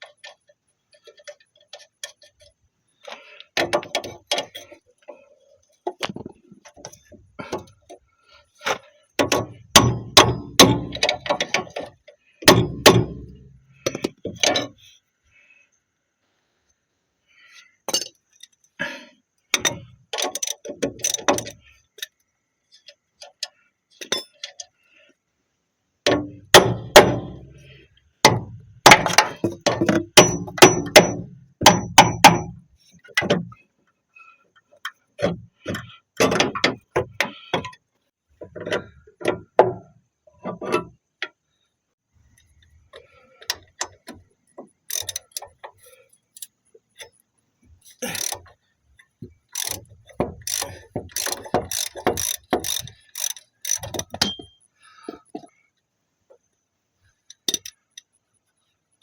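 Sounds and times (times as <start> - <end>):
ratchet clicking: 44.8 - 45.7, 48.0 - 48.5, 49.5 - 54.7, 57.3 - 58.2
metal clinks: 49.5 - 55.5.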